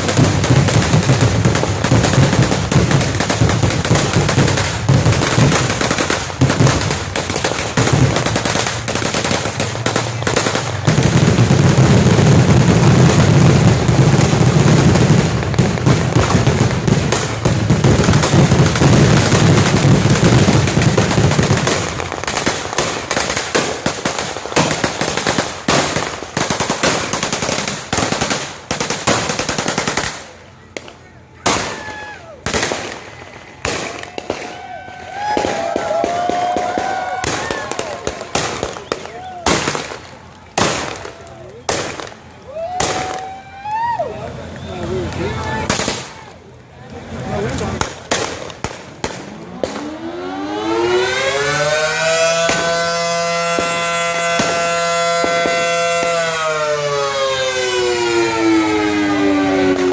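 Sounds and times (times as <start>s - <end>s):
machine-gun fire: 0.0s - 30.3s, 47.8s - 50.1s.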